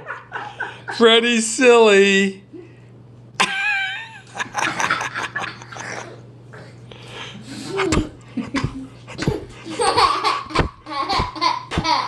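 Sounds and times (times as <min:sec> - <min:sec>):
playful fake sneezing: 0:07.6 - 0:09.5.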